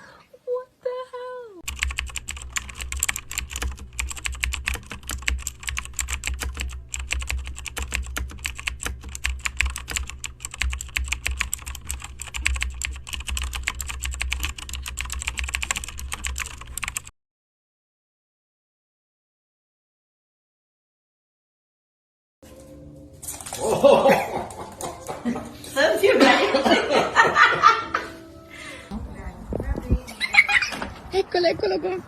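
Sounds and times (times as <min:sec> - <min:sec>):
rapid continuous clicking: 0:01.6 - 0:17.1.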